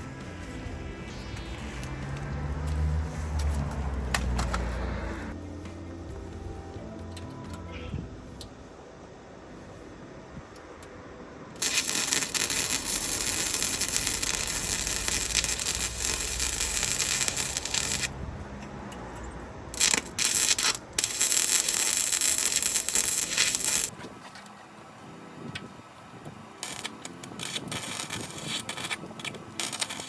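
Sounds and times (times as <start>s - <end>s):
welding crackling hiss: 0.0s - 5.4s, 11.6s - 18.2s, 19.7s - 23.9s, 26.5s - 30.0s.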